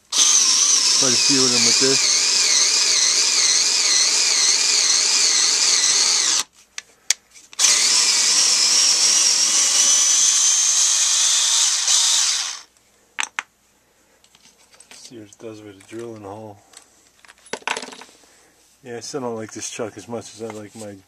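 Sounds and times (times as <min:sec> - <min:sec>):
cordless screwdriver whirring: 0:00.1 - 0:06.5, 0:07.6 - 0:12.7.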